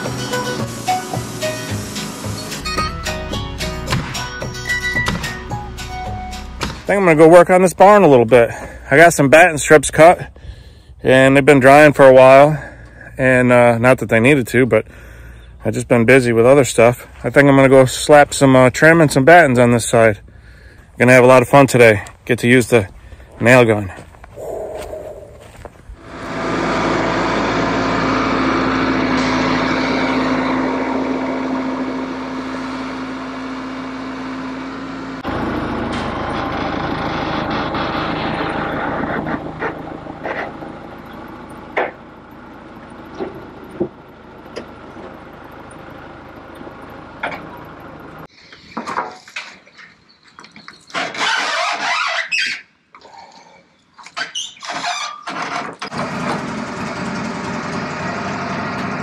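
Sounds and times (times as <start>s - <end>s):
sawmill engine running: 0.0s - 48.3s, 54.8s - 59.0s
sharp knocks: 6.6s - 6.9s.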